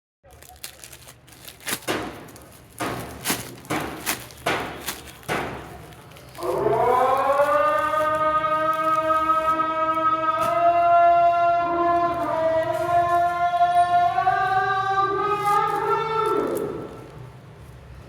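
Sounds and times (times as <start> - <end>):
packaging rustling and tearing: 0.3 - 10.8.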